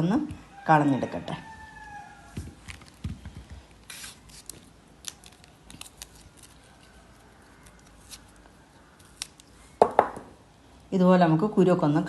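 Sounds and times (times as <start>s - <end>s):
jackfruit bulbs snapping open: 4.0s - 6.6s, 7.6s - 9.6s.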